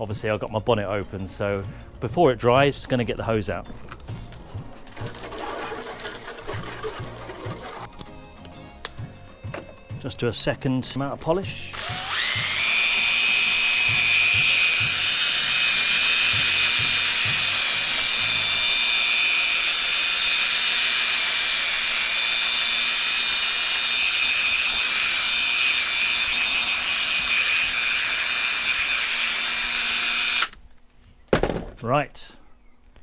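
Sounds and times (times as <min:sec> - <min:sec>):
polishing pad rubbing: 0:04.2 - 0:07.9
power drill high whine: 0:11.7 - 0:30.6.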